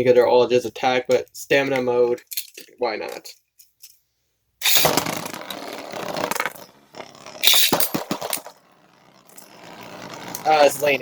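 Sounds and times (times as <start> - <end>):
sharp clacks of collisions: 4.6 - 11.0
spinning tops grinding: 4.6 - 11.0.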